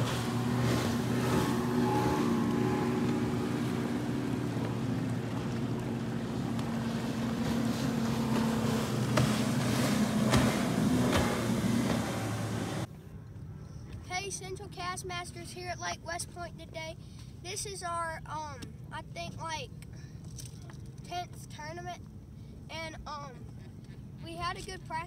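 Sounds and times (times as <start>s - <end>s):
outboard motor running: 0.0s - 12.9s
water noise: 0.0s - 12.9s.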